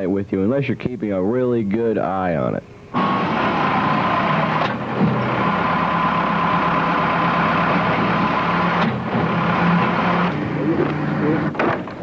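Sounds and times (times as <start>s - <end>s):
engine running steadily: 2.9s - 12.0s.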